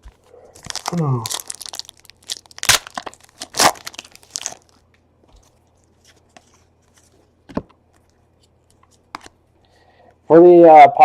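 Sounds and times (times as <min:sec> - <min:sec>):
cards handling noises: 0:00.0 - 0:09.4
wrapper tearing and crinkling: 0:00.6 - 0:04.8.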